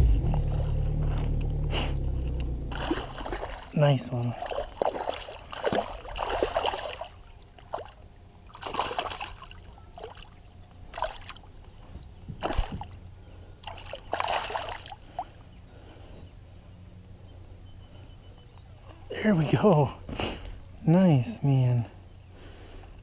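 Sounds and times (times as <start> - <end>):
water splashing: 2.2 - 11.6, 12.4 - 13.0, 13.6 - 15.4.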